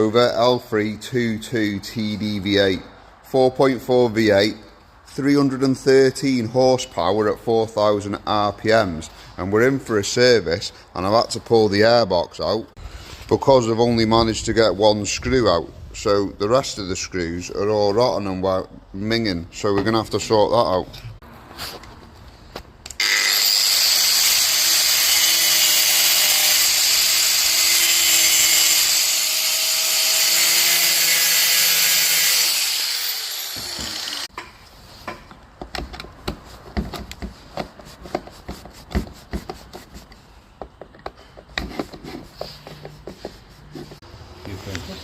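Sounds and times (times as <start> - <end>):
power tool running: 23.0 - 34.3
tool handling clicks and taps: 40.6 - 42.0.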